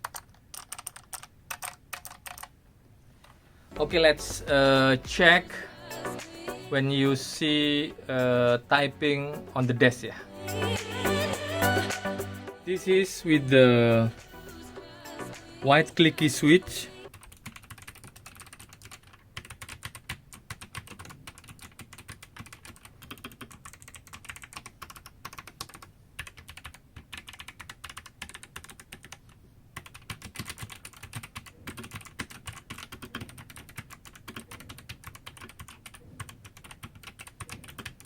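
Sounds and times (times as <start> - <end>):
mechanical keyboard typing: 0.0 - 2.5, 17.1 - 38.0.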